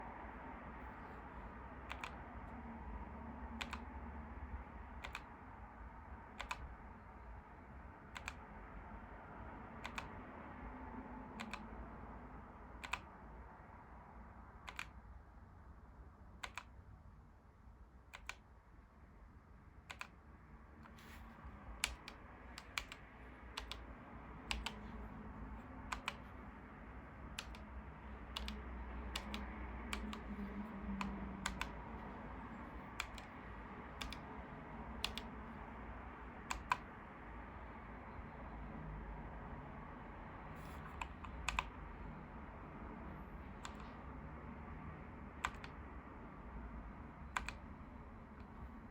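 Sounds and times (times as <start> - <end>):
mechanical keyboard key clicks: 1.8 - 2.2, 3.6 - 3.9, 5.0 - 5.3, 6.4 - 6.8, 8.1 - 8.4, 9.8 - 10.2, 11.4 - 11.7, 12.8 - 13.2, 14.6 - 15.0, 16.4 - 16.8, 18.1 - 18.4, 19.9 - 20.2, 21.8 - 23.8, 24.4 - 24.9, 25.8 - 26.4, 27.3 - 27.7, 28.3 - 31.8, 32.9 - 34.3, 35.0 - 35.3, 36.4 - 36.9, 40.6 - 41.8, 43.6 - 44.0, 45.4 - 45.8, 47.3 - 47.7.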